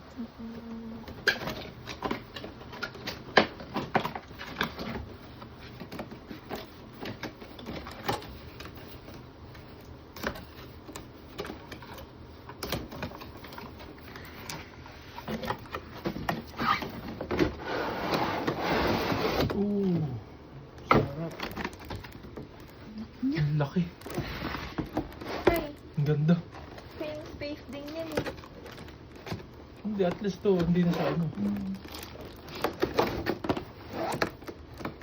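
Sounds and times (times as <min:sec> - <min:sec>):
packaging rustling: 0:20.8 - 0:35.0.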